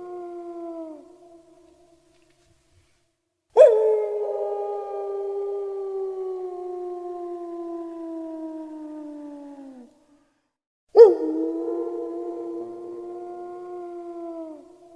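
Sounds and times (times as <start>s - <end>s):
dog howling: 3.6s - 9.9s, 11.0s - 14.9s.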